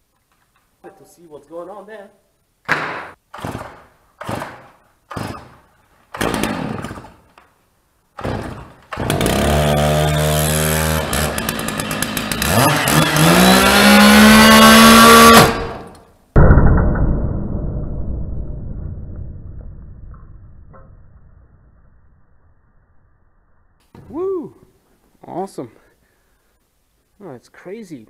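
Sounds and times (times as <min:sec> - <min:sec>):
chainsaw idling and revving: 0:08.3 - 0:15.6.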